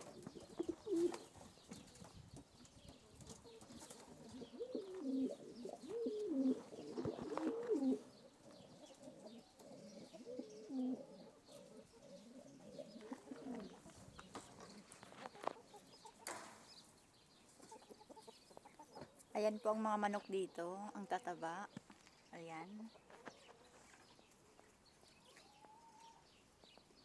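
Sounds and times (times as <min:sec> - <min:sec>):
pigeons cooing: 0:00.0 - 0:16.2.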